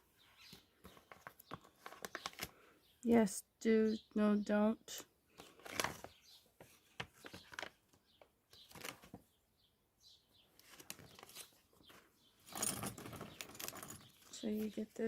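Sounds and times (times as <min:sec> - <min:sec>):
packaging rustling: 0:00.8 - 0:02.6, 0:05.4 - 0:08.0, 0:08.6 - 0:09.2.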